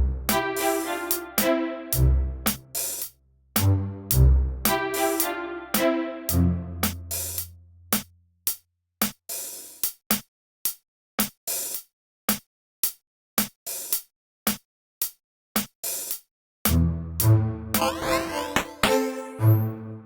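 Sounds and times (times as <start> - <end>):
drum-machine beat: 2.5 - 3.0, 3.6 - 5.9, 6.8 - 8.1.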